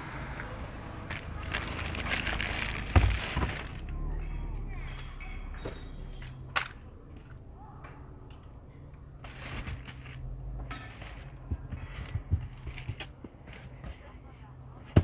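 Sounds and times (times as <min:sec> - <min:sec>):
low hum: 0:00.0 - 0:10.9.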